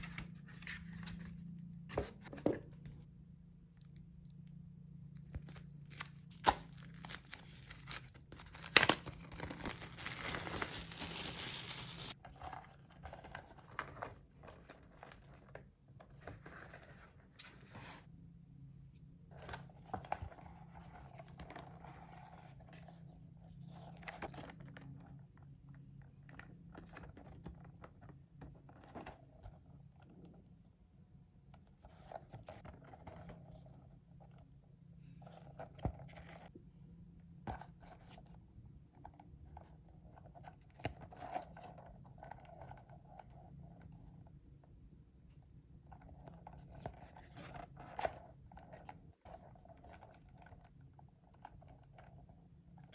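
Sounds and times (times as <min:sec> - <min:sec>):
packaging rustling and crinkling: 0:05.4 - 0:12.2.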